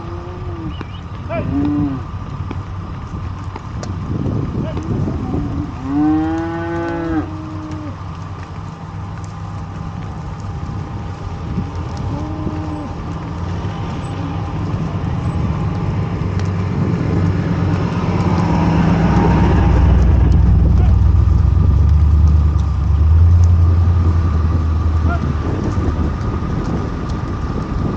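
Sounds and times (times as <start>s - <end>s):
cattle mooing: 0.0s - 2.1s, 4.7s - 8.0s, 11.6s - 16.0s
vehicle engine running: 0.0s - 27.9s.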